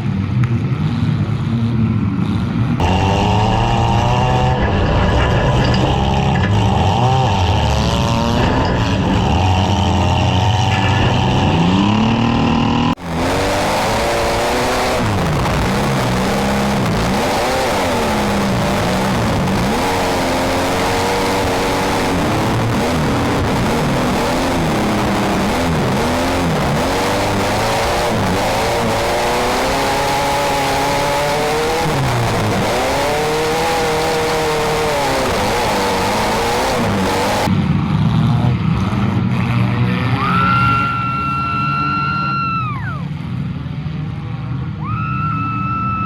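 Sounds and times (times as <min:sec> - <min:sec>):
car engines revving: 0:00.0 - 0:45.8
low dull rumble: 0:02.8 - 0:13.2.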